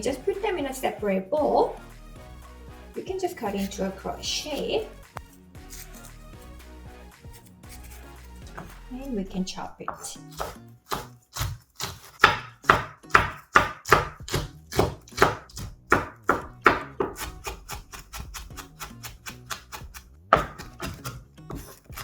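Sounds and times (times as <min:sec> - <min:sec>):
knife chopping on cutting board: 0:07.1 - 0:08.8, 0:09.9 - 0:22.0.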